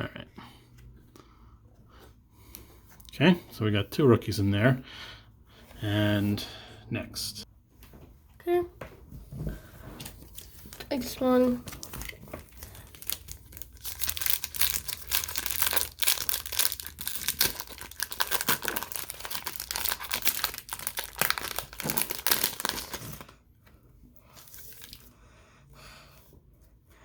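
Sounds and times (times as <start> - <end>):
cellophane wrapper crinkling: 10.2 - 23.3, 24.4 - 25.1.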